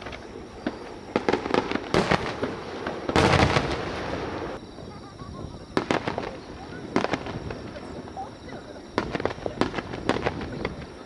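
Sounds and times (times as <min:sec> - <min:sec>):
fireworks bangs and pops: 0:00.0 - 0:11.0.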